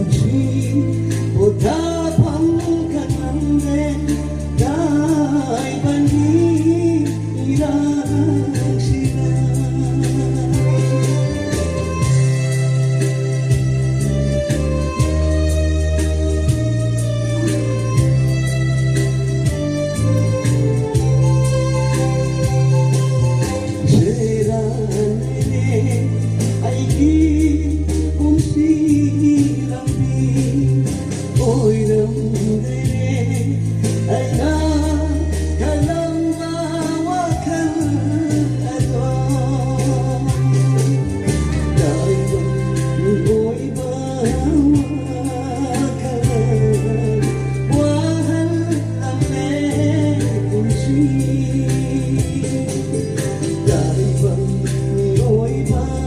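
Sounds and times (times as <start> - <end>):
long held bass notes: 0.0 - 56.0
person singing: 0.0 - 56.0
steady beat: 0.0 - 56.0.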